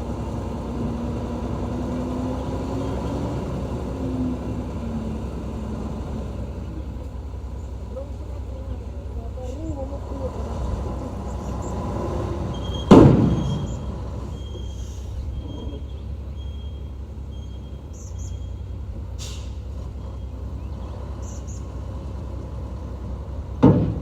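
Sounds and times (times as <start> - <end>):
heavy machine engine running: 0.0 - 24.0
loud bang: 12.8 - 13.9.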